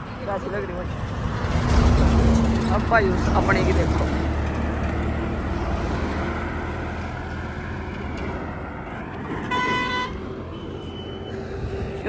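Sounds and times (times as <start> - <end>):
road traffic: 0.0 - 12.0
vehicle horn toot: 9.5 - 11.2.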